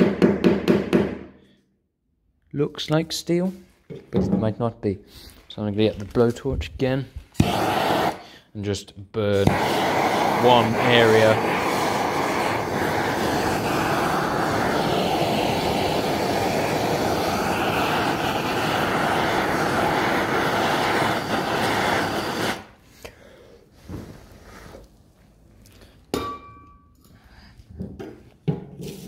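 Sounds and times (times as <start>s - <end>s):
blowtorch flame burning: 7.3s - 8.3s, 9.4s - 23.1s.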